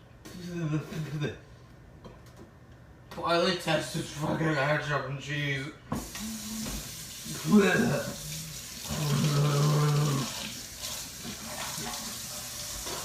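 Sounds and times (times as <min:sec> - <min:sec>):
tap water running into sink: 0:06.0 - 0:13.0.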